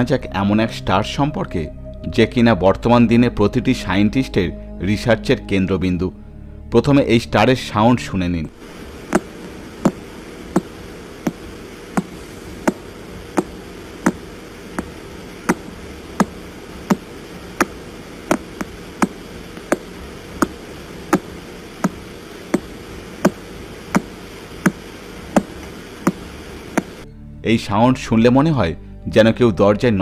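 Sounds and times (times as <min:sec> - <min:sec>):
radio static: 0:08.6 - 0:27.0
regular knock-like clicks: 0:09.1 - 0:27.0.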